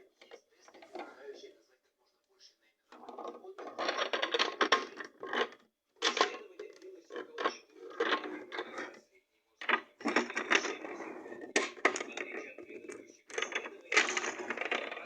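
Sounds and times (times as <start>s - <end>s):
toy washing machine rattling: 3.0s - 8.9s, 9.6s - 15.0s.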